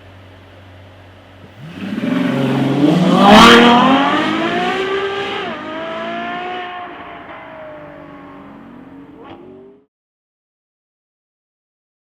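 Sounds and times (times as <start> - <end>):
car engine accelerating hard: 1.4 - 9.9.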